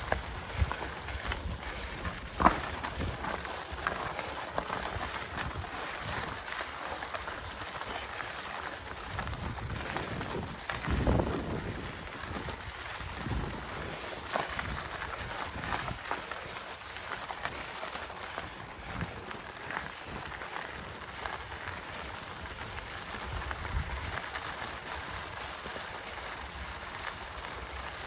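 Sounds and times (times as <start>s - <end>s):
wind buffeting microphone: 0.0s - 6.5s, 8.8s - 16.2s, 18.4s - 28.0s
bike tyre and trail noise: 0.0s - 28.0s
bike knocks and clicks: 0.1s - 4.0s, 20.4s - 27.8s.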